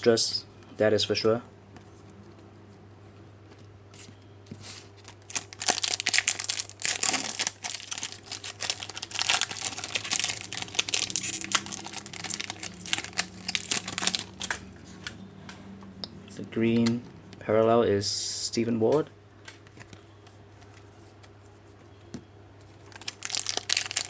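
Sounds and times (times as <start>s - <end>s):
wrapper crinkling as torn open: 5.0s - 14.6s, 22.8s - 24.0s.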